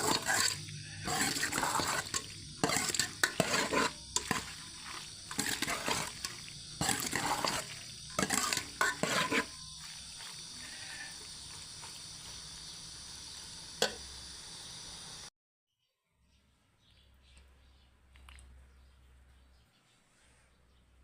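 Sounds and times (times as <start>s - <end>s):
spatula scraping in a pan: 0.0s - 14.0s
food sizzling: 0.0s - 15.3s.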